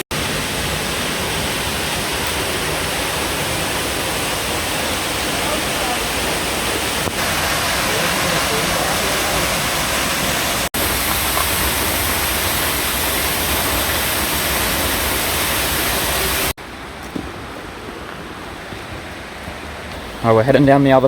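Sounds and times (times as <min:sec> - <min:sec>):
waterfall rushing: 0:00.0 - 0:16.8.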